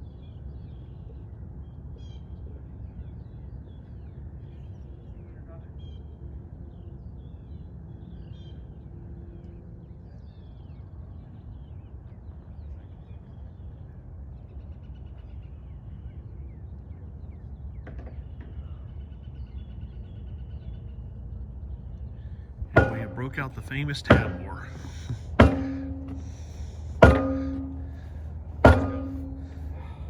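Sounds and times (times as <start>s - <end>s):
low outdoor rumble: 20.6s - 30.0s
sharp knock: 22.8s - 30.0s.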